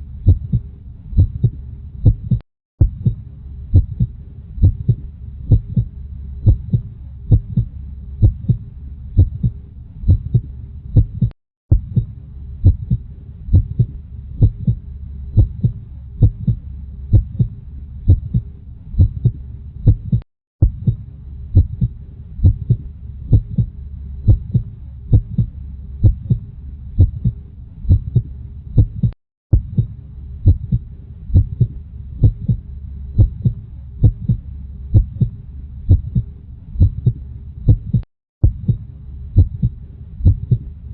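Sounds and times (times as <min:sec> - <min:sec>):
constant low hum: 0:00.0 - 0:40.9
heartbeat thumps: 0:00.2 - 0:40.8.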